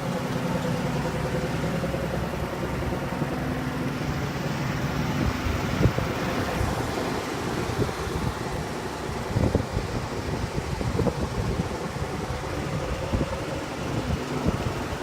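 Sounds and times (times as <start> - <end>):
bus engine idling: 0.0 - 15.0
wind on microphone: 5.0 - 15.0.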